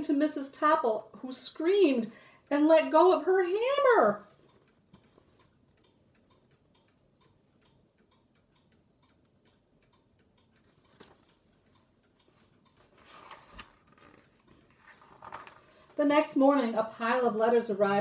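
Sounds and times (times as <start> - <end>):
faint evenly spaced ticks: 1.2 - 13.1
soft rustle: 10.6 - 16.0.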